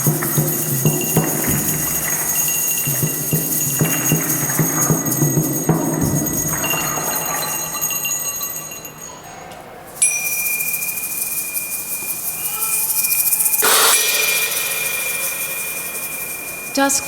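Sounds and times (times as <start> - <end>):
high hiss: 0.0 - 6.8, 9.9 - 17.0
bell-like metal percussion ringing: 0.0 - 17.0
high steady tone: 10.0 - 17.0.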